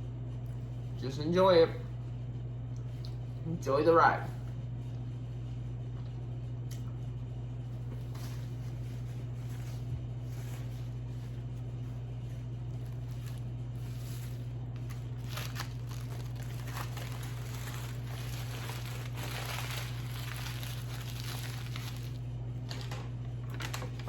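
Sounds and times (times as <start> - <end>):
low electrical hum: 0.0 - 24.0
paper crumpling: 7.8 - 24.0.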